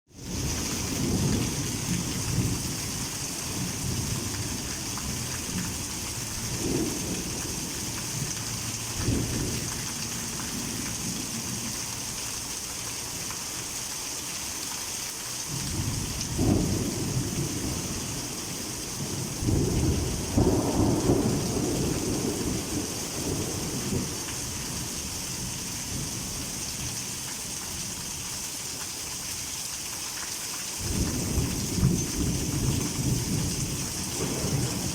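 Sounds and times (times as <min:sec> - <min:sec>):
heavy rain: 0:00.1 - 0:34.9
thunder rumbling: 0:00.2 - 0:11.8, 0:15.6 - 0:24.8, 0:30.8 - 0:34.9.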